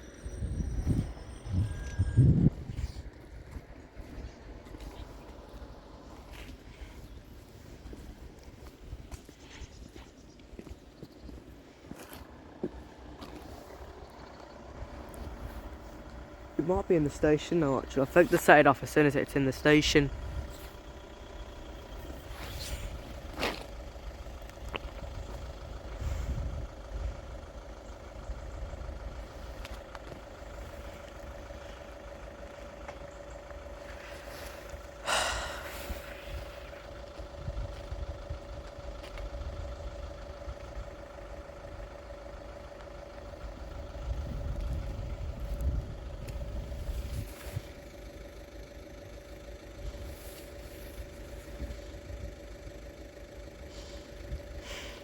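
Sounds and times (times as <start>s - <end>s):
level crossing yodel alarm: 0.0s - 3.1s
wind buffeting microphone: 0.4s - 4.4s, 37.3s - 38.6s, 43.8s - 47.6s.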